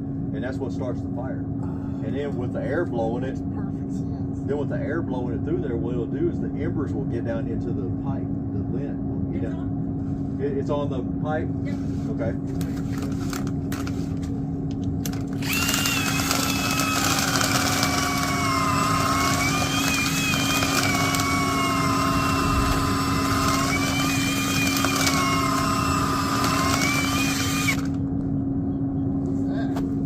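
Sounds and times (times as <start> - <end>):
steady low hum: 0.0 - 30.0
power tool motor whining: 15.0 - 28.0.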